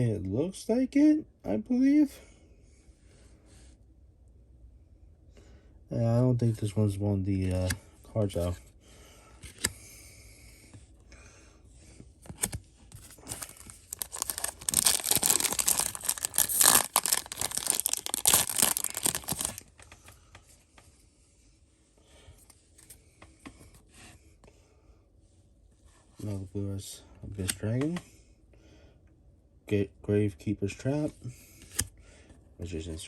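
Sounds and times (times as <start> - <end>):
handling cards: 12.2 - 20.5
foil wrapper tearing: 13.2 - 19.7.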